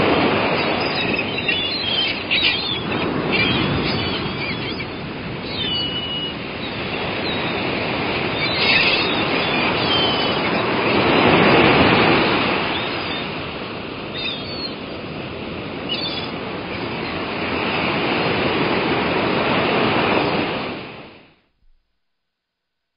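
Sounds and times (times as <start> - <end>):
surf washing in: 0.0 - 21.3
seagull calls: 0.3 - 13.4, 14.1 - 14.8, 15.8 - 17.2.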